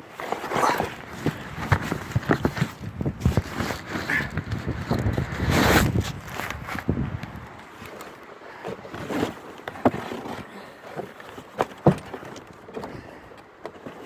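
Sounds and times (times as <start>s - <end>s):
gusting wind: 0.0s - 10.5s
knocks and rustles: 0.1s - 14.0s.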